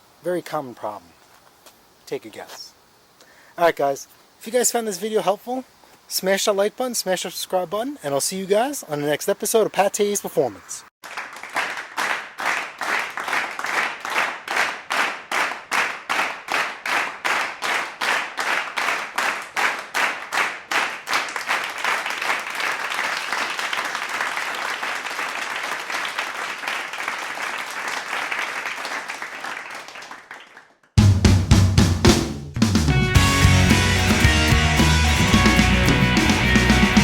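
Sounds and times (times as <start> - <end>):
continuous applause: 11.0 - 30.9, 33.2 - 37.0
crowd clapping in unison: 11.0 - 30.9, 33.5 - 37.0.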